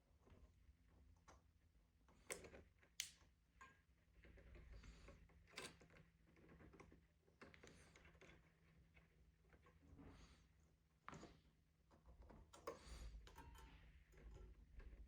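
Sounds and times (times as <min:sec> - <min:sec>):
faint clicks and light taps: 0:00.2 - 0:09.9.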